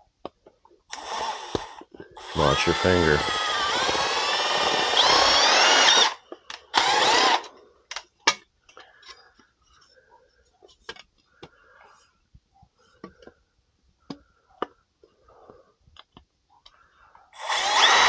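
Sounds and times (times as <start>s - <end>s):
power drill drilling sheet metal: 0.9s - 7.5s, 17.4s - 18.0s.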